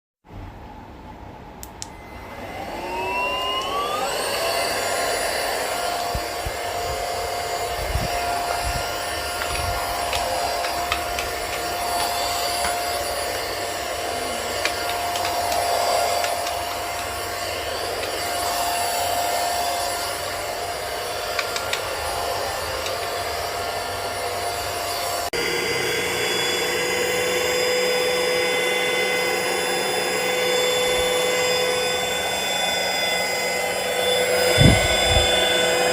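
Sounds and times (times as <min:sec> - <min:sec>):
vacuum cleaner motor whine: 0:01.6 - 0:35.9.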